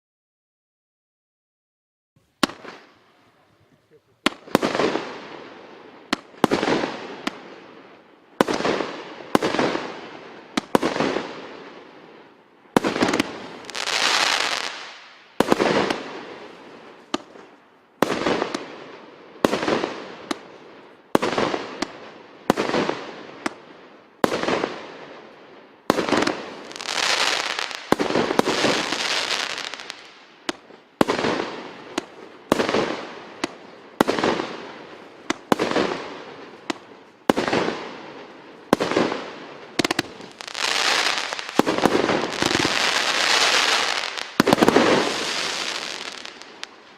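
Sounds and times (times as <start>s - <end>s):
crackle of bursting stars: 25.3s - 46.9s
firework shots banging: 38.7s - 46.8s.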